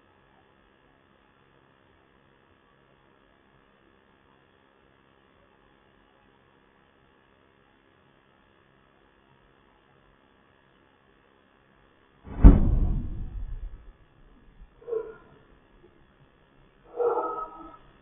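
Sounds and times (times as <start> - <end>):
faint electrical hum: 0.0 - 18.0
loud explosion boom: 12.3 - 15.1.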